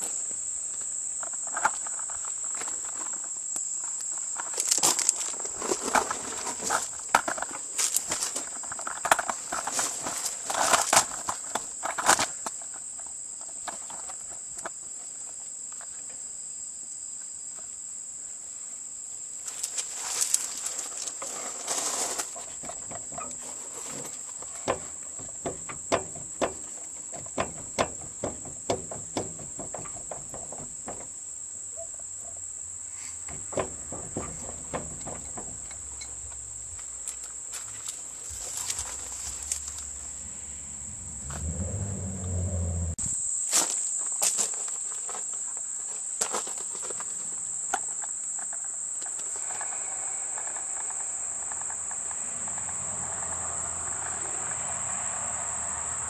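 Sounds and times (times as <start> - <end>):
crickets chirping: 0.0 - 56.0
sharp knocks: 24.6 - 31.1, 33.3 - 36.8
low rumble: 38.3 - 43.1.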